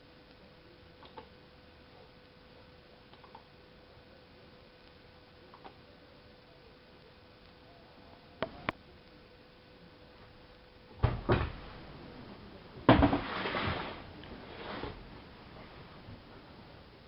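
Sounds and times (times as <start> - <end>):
washing machine knocks and thuds: 11.0 - 11.8, 12.8 - 13.8.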